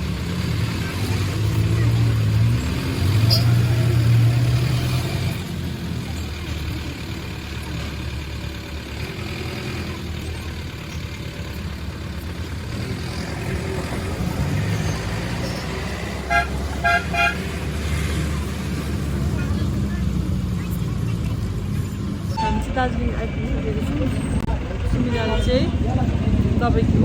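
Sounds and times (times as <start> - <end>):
road vehicle rumbling: 0.0 - 27.0
car horn tooting: 16.0 - 17.6, 22.3 - 23.0.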